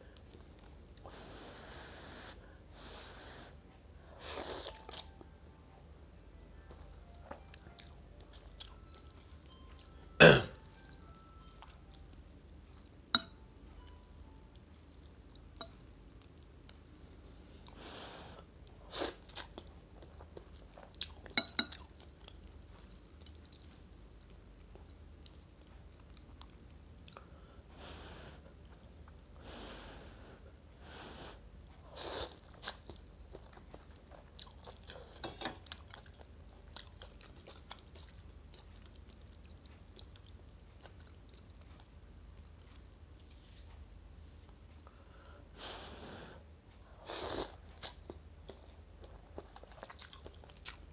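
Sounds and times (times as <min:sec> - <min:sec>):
person chewing: 0:04.3 - 0:05.3, 0:06.7 - 0:12.1, 0:32.2 - 0:43.8, 0:47.4 - 0:50.9
spoon clicking against bowl: 0:13.1 - 0:13.4.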